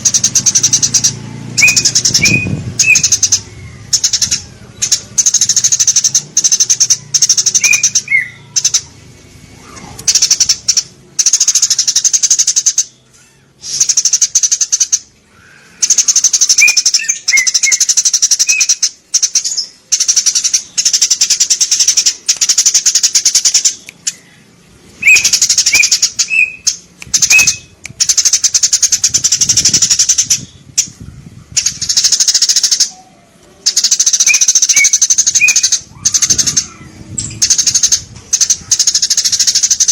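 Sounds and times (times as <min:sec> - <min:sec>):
sparrows chirping and chattering: 0:00.0 - 0:39.9.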